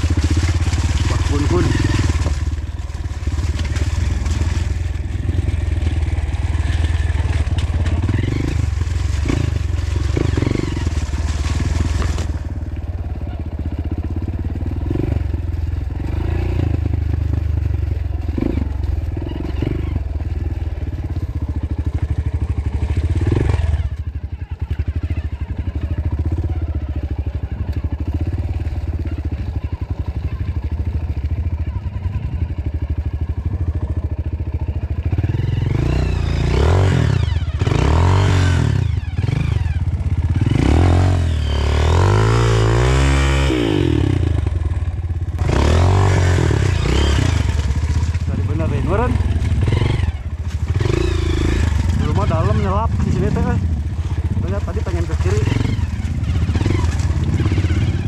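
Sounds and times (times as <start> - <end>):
clatter and scraping: 0.0 - 31.7, 35.7 - 58.0
motorcycle engine running: 0.0 - 58.0.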